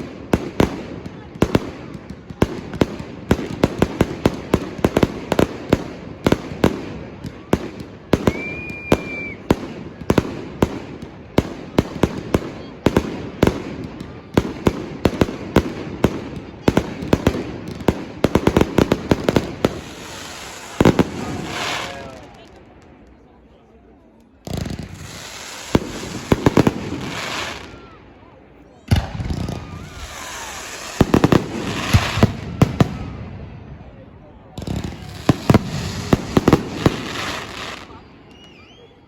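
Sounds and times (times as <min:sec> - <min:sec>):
firecrackers banging: 0:00.0 - 0:23.0, 0:24.3 - 0:28.0, 0:28.9 - 0:38.0
high whistling tone: 0:08.3 - 0:09.4, 0:38.3 - 0:39.0.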